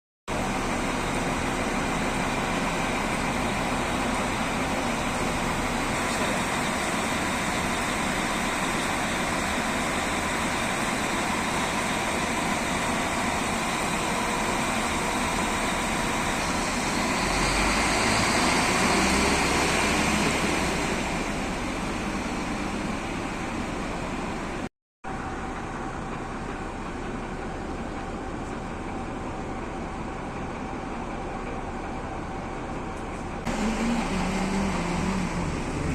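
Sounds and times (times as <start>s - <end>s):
train running: 0.3s - 35.9s.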